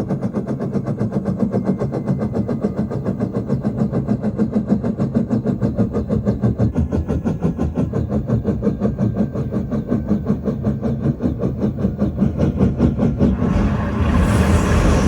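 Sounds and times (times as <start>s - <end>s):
helicopter rotor blades thwopping: 12.0s - 15.0s.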